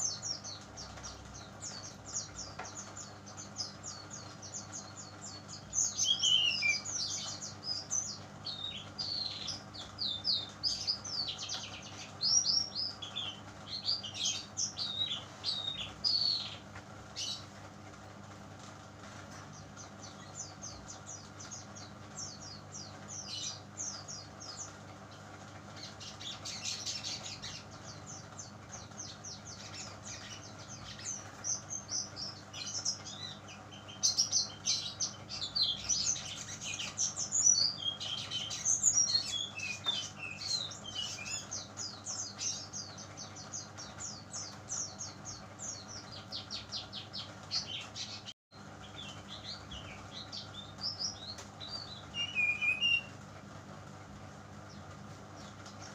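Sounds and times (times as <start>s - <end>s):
bird singing high chirps: 0.0s - 16.6s, 48.9s - 53.2s
steady low hum: 0.0s - 55.9s.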